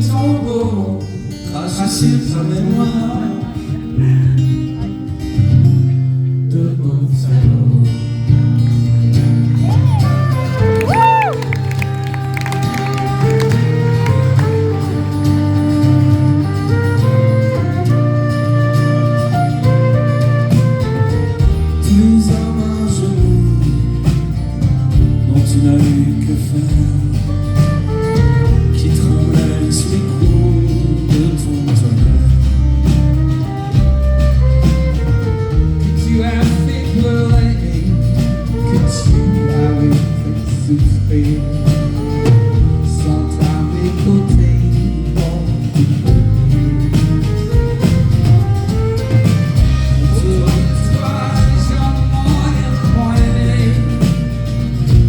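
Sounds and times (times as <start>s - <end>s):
live band playing: 0.0s - 55.0s.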